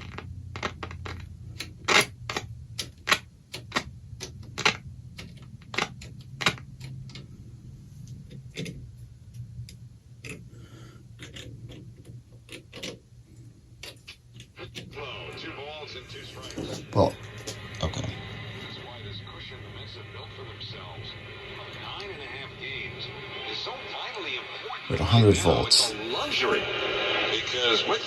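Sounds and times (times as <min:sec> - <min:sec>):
radio clicks and crackles: 0:11.2 - 0:28.0
radio low hum: 0:14.4 - 0:28.0.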